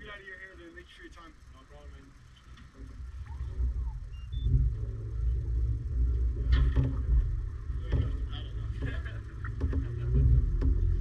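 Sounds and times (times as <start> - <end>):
low rumble: 2.8 - 11.0.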